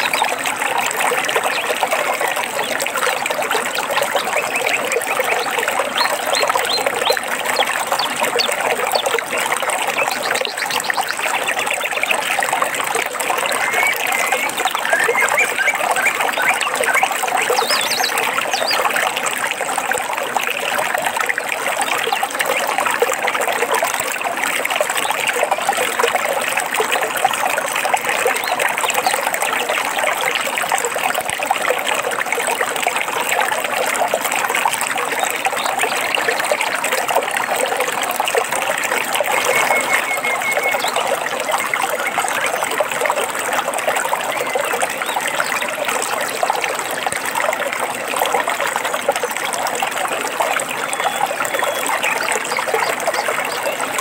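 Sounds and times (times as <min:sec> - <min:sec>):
stream water trickling over stones: 0:00.0 - 0:54.0
faint bird call: 0:39.3 - 0:41.0.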